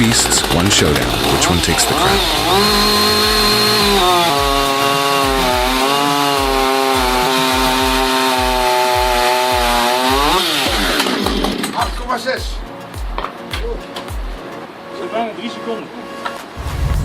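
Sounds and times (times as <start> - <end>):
chainsaw cutting wood: 0.0 - 12.0.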